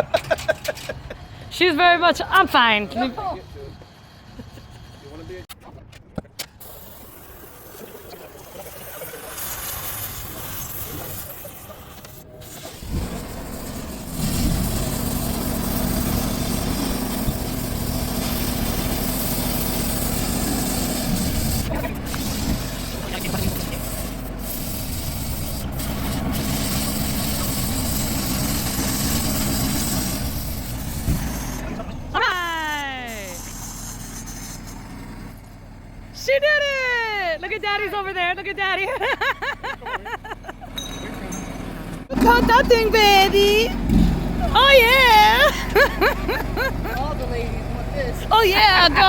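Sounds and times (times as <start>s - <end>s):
cutting torch hissing: 6.6s - 35.4s, 43.8s - 47.1s
loud engine-like drone: 12.6s - 36.2s, 40.8s - 49.0s.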